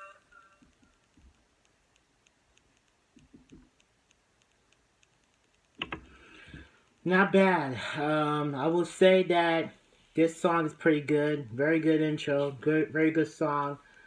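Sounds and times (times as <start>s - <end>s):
faint even ticking: 0.0s - 9.2s.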